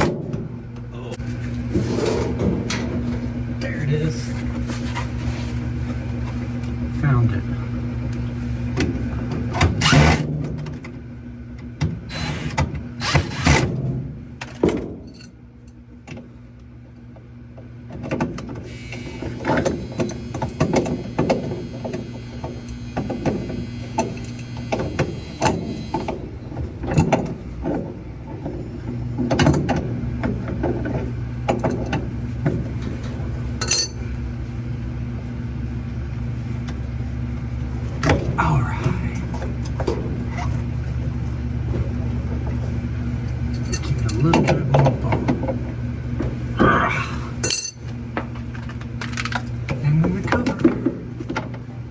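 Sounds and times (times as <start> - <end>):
steady low hum: 0.0 - 51.9
hand tools and metal parts clicking: 43.5 - 45.2, 47.4 - 47.8, 48.4 - 49.6.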